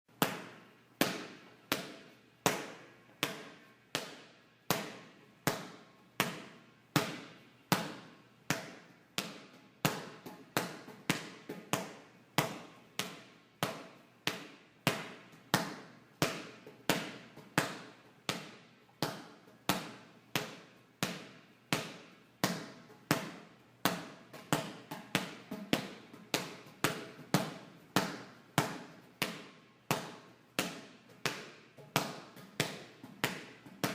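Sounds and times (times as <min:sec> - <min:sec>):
yoga ball bouncing on floor: 0:00.2 - 0:33.9.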